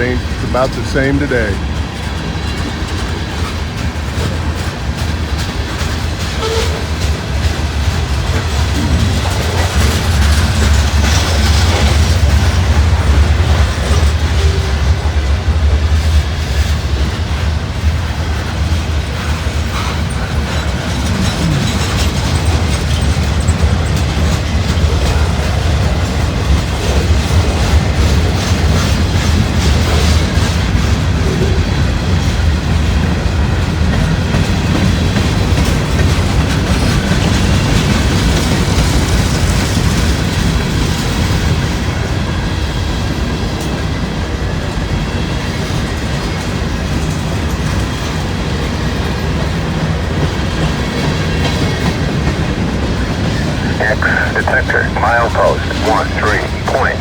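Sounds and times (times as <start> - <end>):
train rolling rumble: 0.0 - 42.2.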